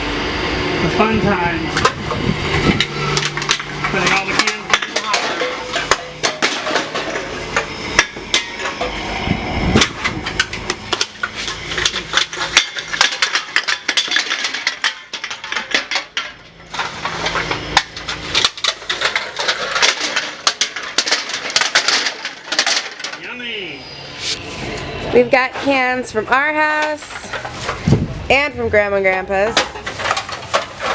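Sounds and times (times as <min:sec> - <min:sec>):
aluminum cans clattering: 0:01.8 - 0:09.0, 0:09.8 - 0:23.3, 0:26.8 - 0:27.9, 0:29.4 - 0:30.9.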